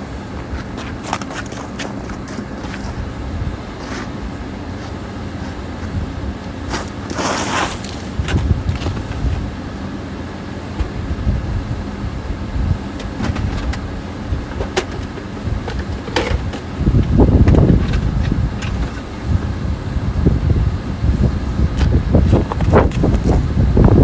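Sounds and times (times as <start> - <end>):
low outdoor rumble: 0.0 - 24.0
scraping rush: 6.6 - 9.4.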